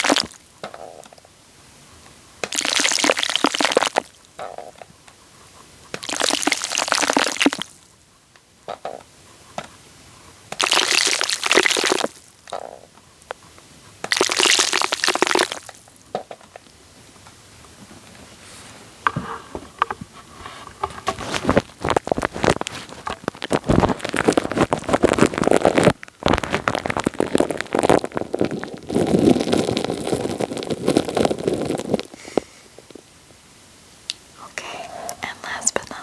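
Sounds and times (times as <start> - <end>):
wet sticky crackling: 2.4 - 4.7, 5.9 - 7.9, 10.5 - 13.4, 14.0 - 16.0, 21.1 - 32.4.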